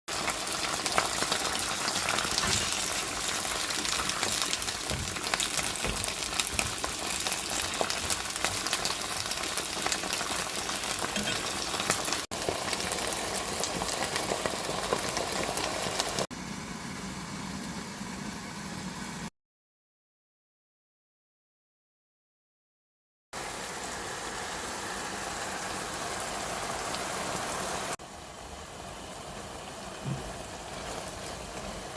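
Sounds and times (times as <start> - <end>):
vegetables sizzling in a pan: 0.1 - 16.3, 23.4 - 31.9.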